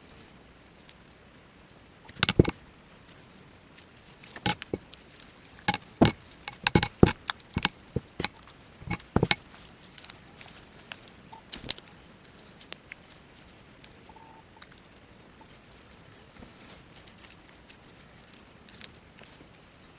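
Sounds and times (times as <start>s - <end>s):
slime clicks and taps: 2.1s - 2.5s.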